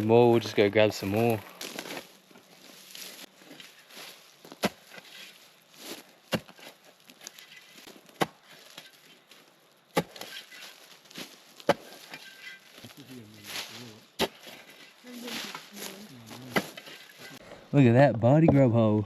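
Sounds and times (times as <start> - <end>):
quiet rustling: 0.0 - 8.0
shovel striking dry ground: 0.0 - 17.4.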